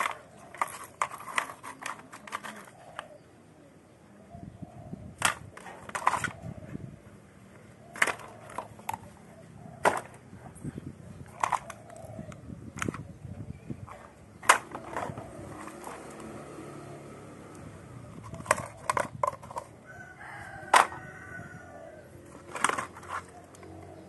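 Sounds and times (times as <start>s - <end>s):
hard objects knocking: 18.1s - 19.8s.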